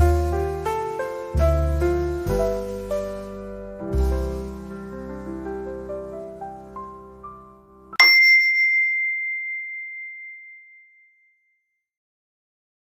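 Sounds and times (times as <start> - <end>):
soft background music: 0.0 - 8.0
bright bell ding: 8.0 - 11.3.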